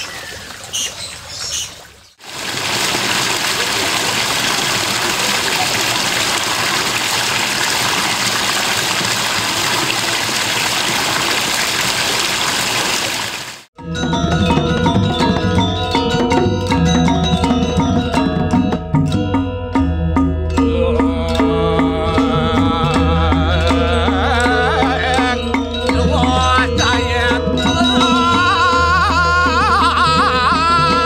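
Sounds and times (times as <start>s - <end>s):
rushing water hiss: 0.0s - 13.7s
drums and pitched percussion music: 13.8s - 31.0s.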